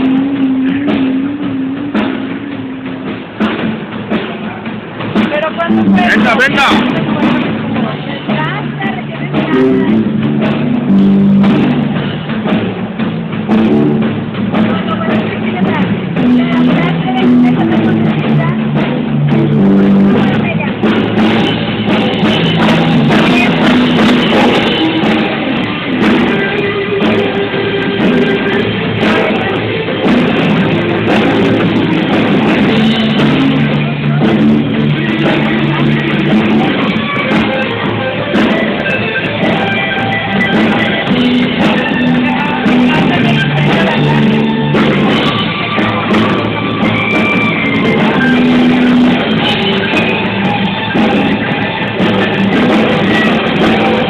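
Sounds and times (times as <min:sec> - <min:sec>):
person singing: 0:00.0 - 0:03.2
drum kit: 0:00.0 - 0:54.0
guitar: 0:00.0 - 0:54.0.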